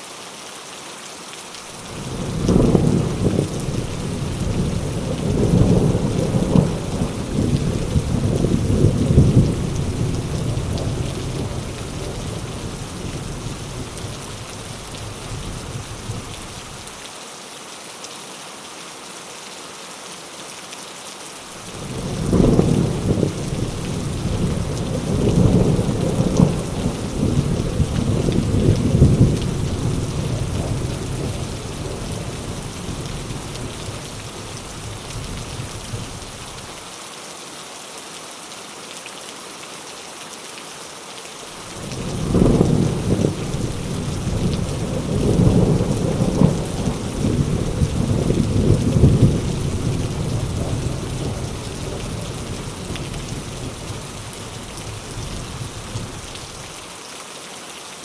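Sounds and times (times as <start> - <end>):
heavy rain falling: 0.0 - 58.0
rolling thunder: 1.8 - 16.8, 21.6 - 36.7, 41.6 - 56.6.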